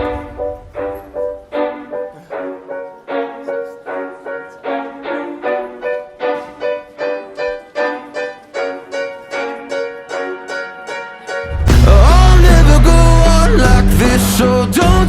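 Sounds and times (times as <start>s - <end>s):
instrumental music with repeating notes: 0.0s - 15.0s.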